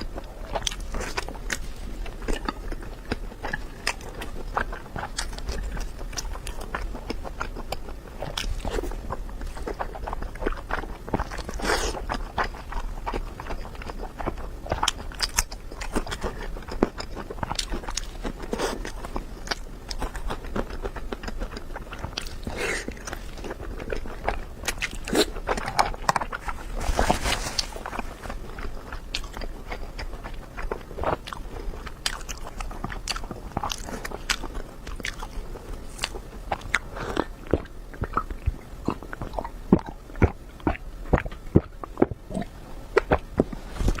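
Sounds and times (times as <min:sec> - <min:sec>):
person chewing and crunching: 0:00.0 - 0:44.0.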